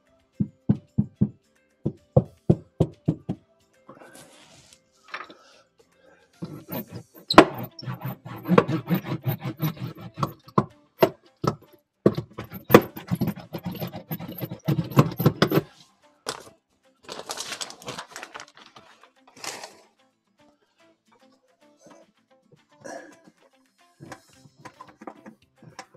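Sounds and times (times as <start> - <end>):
metal hand roller knocking and rubbing: 6.4 - 15.7, 24.0 - 25.9.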